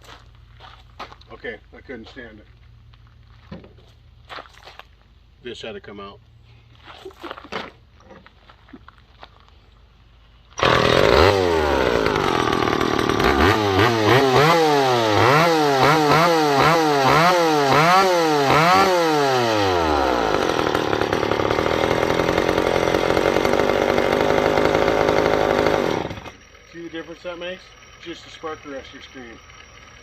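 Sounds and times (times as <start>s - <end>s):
chainsaw revving and idling: 10.6s - 30.0s.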